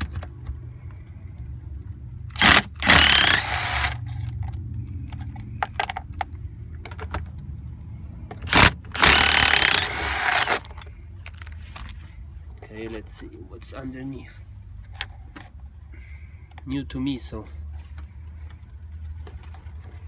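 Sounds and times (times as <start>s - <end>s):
power driver spinning: 2.3s - 4.3s, 8.4s - 10.7s
screws and parts rattling: 2.3s - 4.5s, 8.4s - 12.0s.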